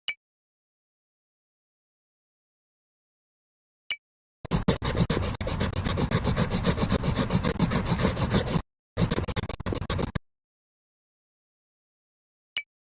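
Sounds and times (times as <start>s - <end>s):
drawing tool scribbling on paper: 4.5s - 10.2s.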